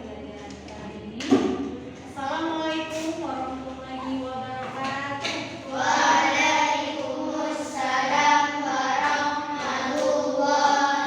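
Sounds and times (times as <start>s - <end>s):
children singing together: 5.2s - 11.0s.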